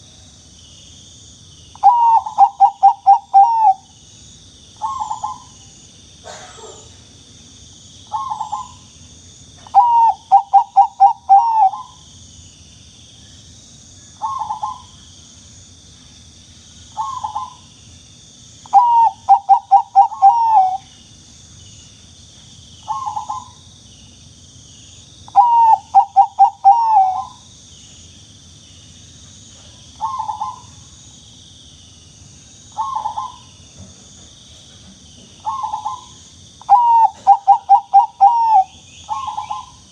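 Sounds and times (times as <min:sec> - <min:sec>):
dove cooing: 0:01.8 - 0:03.8, 0:04.8 - 0:05.5, 0:09.6 - 0:12.0, 0:14.2 - 0:14.9, 0:18.7 - 0:20.9, 0:22.9 - 0:23.6, 0:25.4 - 0:27.4, 0:30.0 - 0:30.7, 0:32.8 - 0:33.4, 0:35.4 - 0:39.8.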